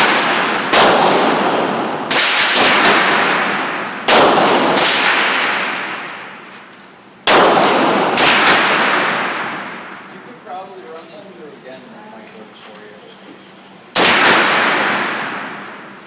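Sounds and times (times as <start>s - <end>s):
echoing gunshots: 0.0s - 6.5s, 7.2s - 10.2s, 14.0s - 15.9s.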